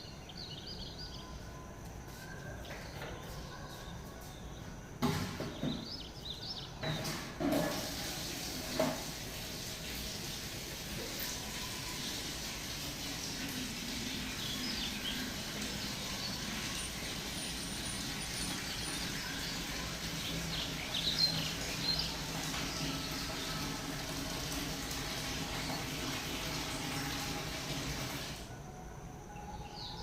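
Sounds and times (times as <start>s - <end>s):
small birds chirping: 0.0s - 7.1s, 11.0s - 23.7s.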